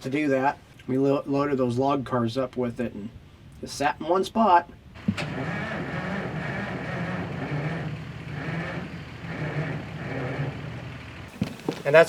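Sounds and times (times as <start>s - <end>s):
engine idling: 5.0s - 12.0s.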